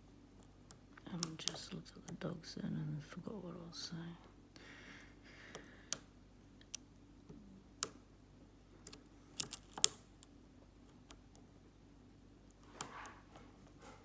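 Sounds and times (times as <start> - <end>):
lock pick clicking in padlock: 8.8 - 10.0.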